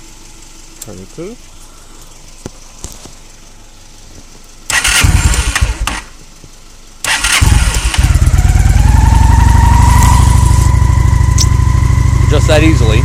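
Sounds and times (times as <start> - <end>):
motorcycle engine idling: 0.0 - 13.0
motorcycle starter cranking: 4.7 - 6.1, 7.0 - 9.0.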